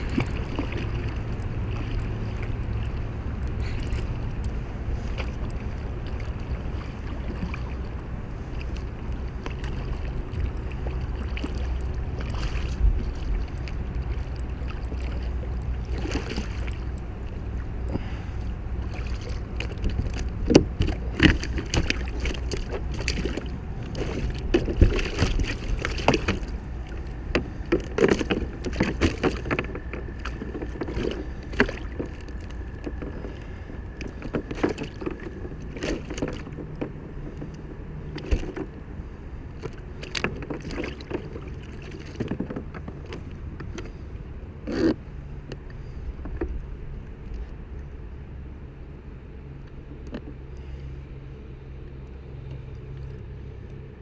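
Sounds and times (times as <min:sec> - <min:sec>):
water and wind rumble: 0:00.0 - 0:54.0
sharp knocks against kayak: 0:27.3 - 0:32.2, 0:34.0 - 0:38.8.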